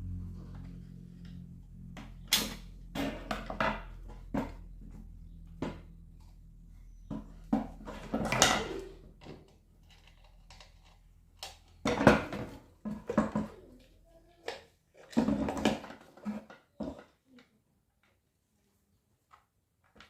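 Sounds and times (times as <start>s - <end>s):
low steady hum: 0.0s - 12.5s.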